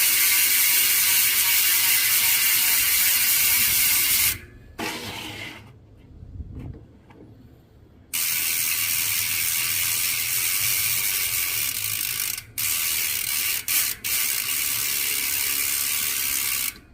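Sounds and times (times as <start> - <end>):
bicycle freehub buzzing: 0.0 - 4.5, 8.1 - 16.9.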